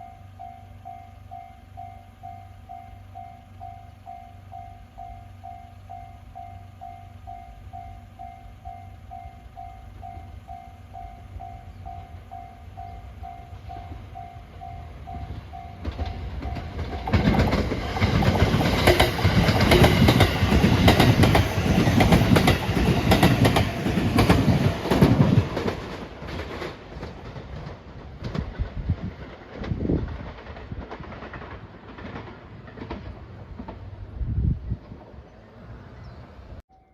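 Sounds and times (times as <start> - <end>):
level-crossing warning bell: 0.0 - 25.1
train wheels clattering over rails: 11.8 - 34.1.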